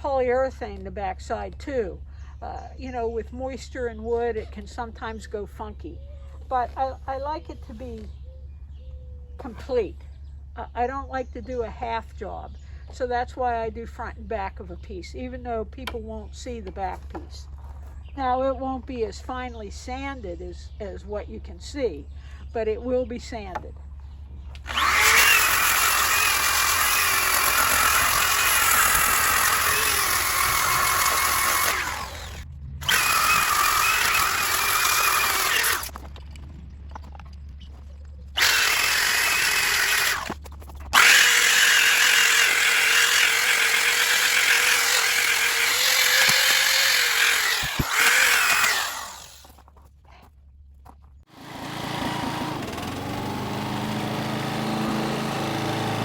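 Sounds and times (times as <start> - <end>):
power sander on wood: 24.6 - 36.0, 38.4 - 40.4, 41.0 - 49.5, 51.3 - 56.0.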